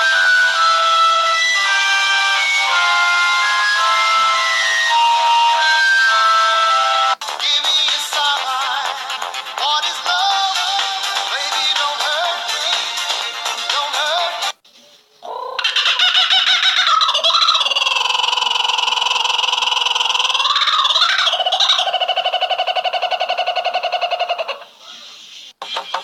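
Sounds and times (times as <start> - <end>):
bird trilling: 15.2 - 26.0.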